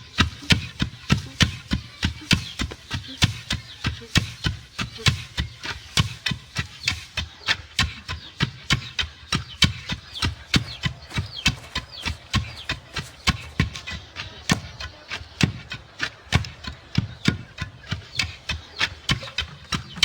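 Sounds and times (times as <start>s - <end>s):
rhythmic sharp knocks with thuds: 0.0s - 20.0s.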